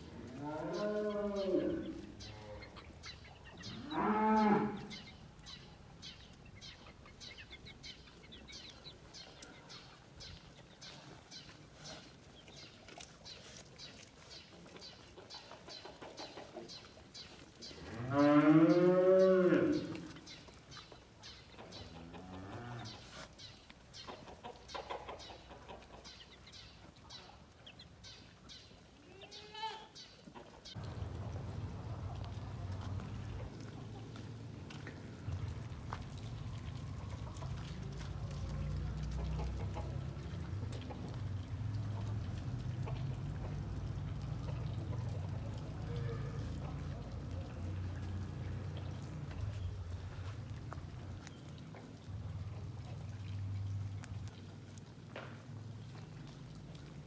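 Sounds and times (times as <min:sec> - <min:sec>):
livestock calling: 0:00.4 - 0:02.7
rain pattering: 0:30.7 - 0:57.0.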